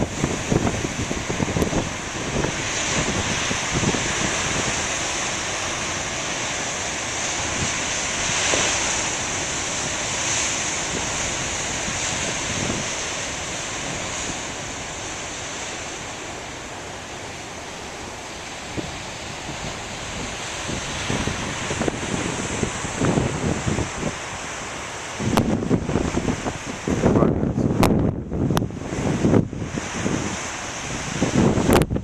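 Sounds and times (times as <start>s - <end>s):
wind thumps on microphone: 0.0s - 4.9s, 9.8s - 13.0s, 18.6s - 24.3s, 25.2s - 32.0s
waves breaking ashore: 0.0s - 32.0s.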